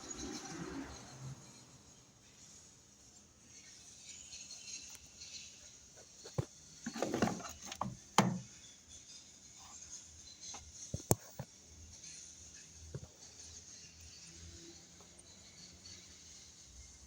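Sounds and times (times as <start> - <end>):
handling clicks and knocks: 6.3 - 8.5.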